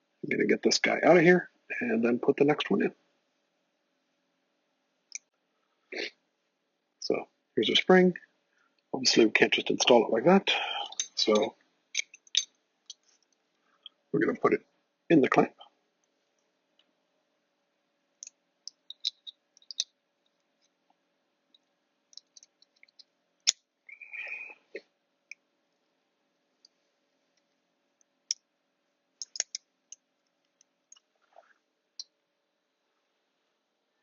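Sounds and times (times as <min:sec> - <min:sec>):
light clicks and taps: 0:18.2 - 0:23.6, 0:29.2 - 0:32.1.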